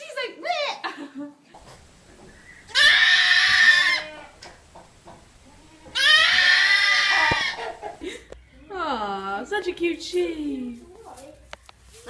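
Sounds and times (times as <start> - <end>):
goat bleating: 2.7 - 4.4, 5.4 - 7.8.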